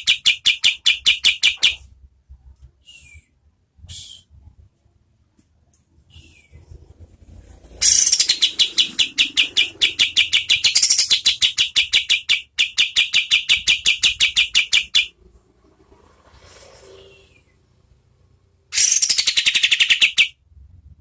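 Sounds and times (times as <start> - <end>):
bird rapid high call: 0.0 - 1.9, 7.8 - 15.2, 18.7 - 20.4.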